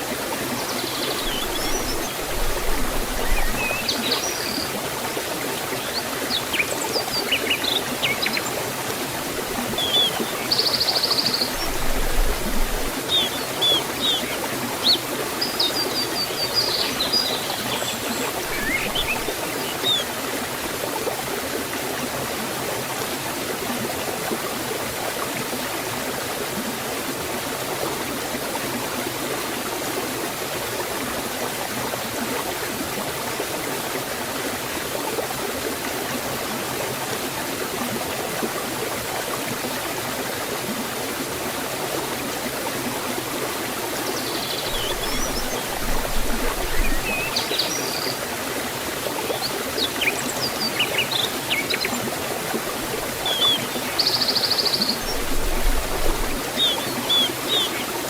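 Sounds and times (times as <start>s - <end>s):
waterfall rushing: 0.0s - 20.7s, 40.0s - 58.0s.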